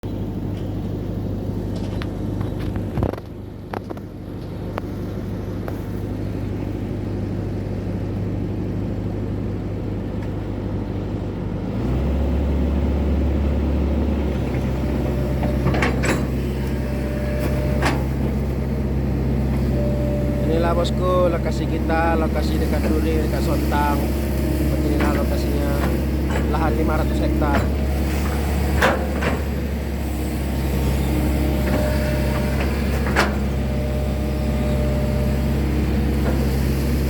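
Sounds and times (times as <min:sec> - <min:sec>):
excavator diesel engine running: 0:00.0 - 0:37.0.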